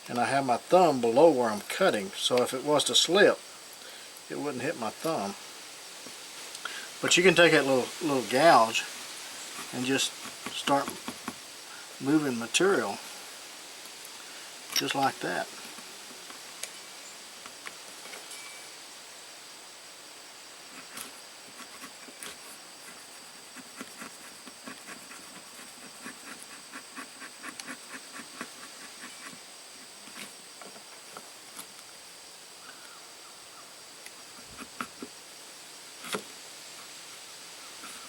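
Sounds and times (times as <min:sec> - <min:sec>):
faint hiss with high tone: 0:00.0 - 0:21.7
knife blade carving wood: 0:23.6 - 0:29.4.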